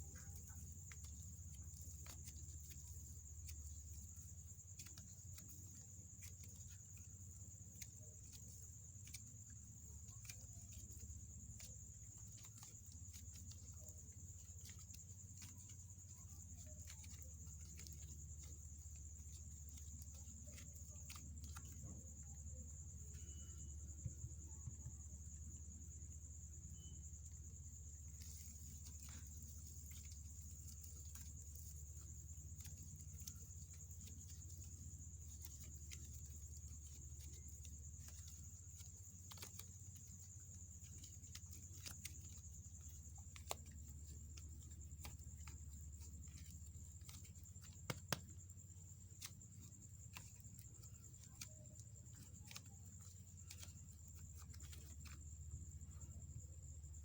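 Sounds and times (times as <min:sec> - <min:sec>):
faint high whine: 0:02.0 - 0:57.0
sticky clicks of slime: 0:32.6 - 0:55.2.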